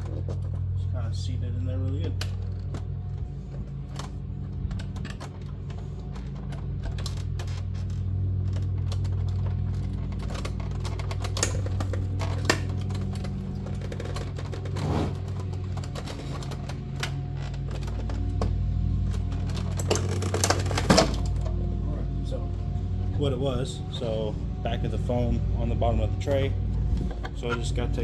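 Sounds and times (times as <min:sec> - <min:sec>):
steady low hum: 0:00.0 - 0:28.0
plastic tray clicking and creaking: 0:01.8 - 0:21.4.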